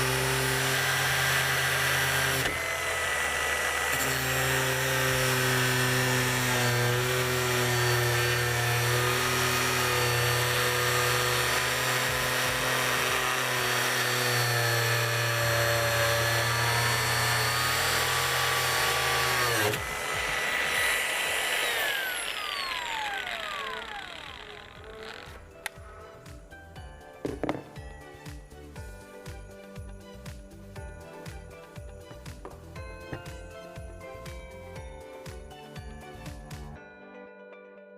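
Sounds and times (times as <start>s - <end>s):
angle grinder whining: 0.0s - 25.8s.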